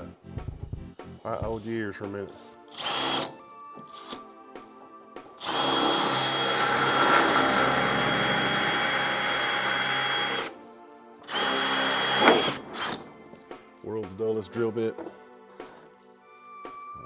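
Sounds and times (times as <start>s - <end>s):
electric drill boring: 2.7s - 4.3s, 5.4s - 10.5s, 11.2s - 13.1s.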